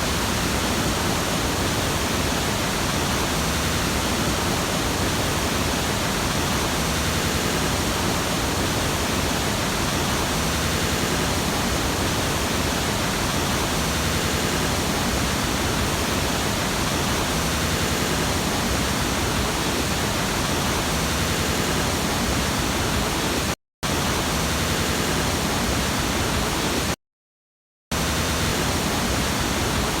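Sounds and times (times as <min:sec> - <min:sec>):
waterfall rushing: 0:28.0 - 0:30.0.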